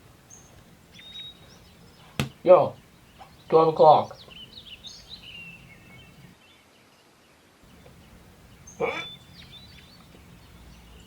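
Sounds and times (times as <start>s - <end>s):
birds chirping: 0.0s - 6.9s, 7.6s - 11.0s
bird squawk: 7.8s - 10.0s.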